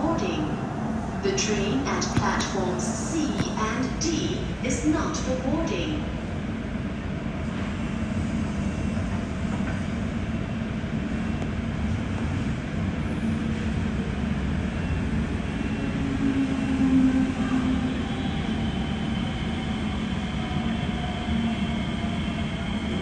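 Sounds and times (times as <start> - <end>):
metro train rumble: 0.0 - 23.0.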